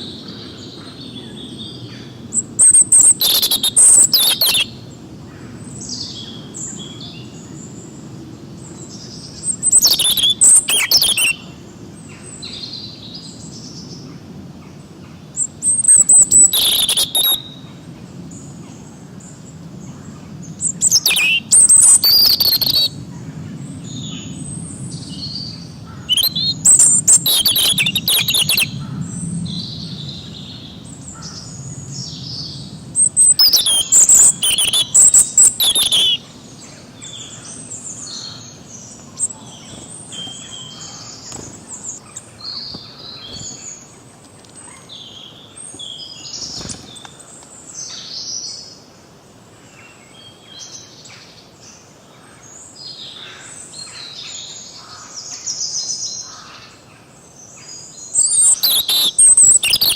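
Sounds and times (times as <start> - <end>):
forest birds chirping: 0.0 - 59.9
loud bird repeated notes: 3.0 - 4.6, 16.2 - 17.4, 20.7 - 22.9, 25.9 - 28.7, 33.2 - 36.2.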